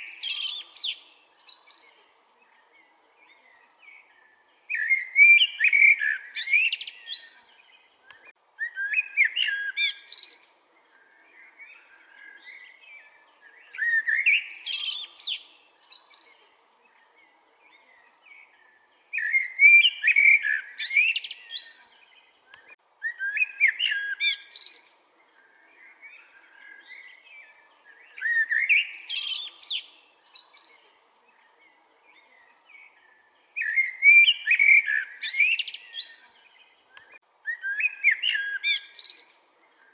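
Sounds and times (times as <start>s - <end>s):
faint bird chirps: 0.0s - 39.9s
songbird whistling phrase: 4.7s - 7.5s, 8.1s - 10.5s, 19.1s - 25.0s, 28.1s - 30.8s, 33.6s - 39.4s.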